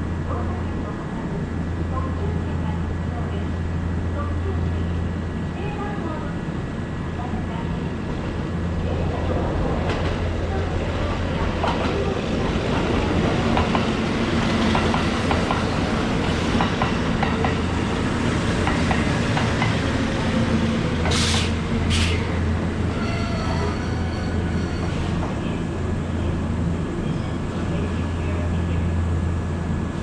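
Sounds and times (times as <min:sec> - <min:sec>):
electric train rumbling: 0:00.0 - 0:30.0
air hiss bursts: 0:21.1 - 0:22.2.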